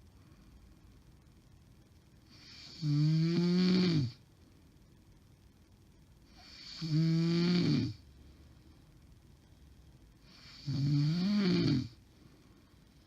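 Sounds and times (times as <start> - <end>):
woman snoring: 2.4 - 4.2, 6.4 - 8.0, 10.3 - 12.0.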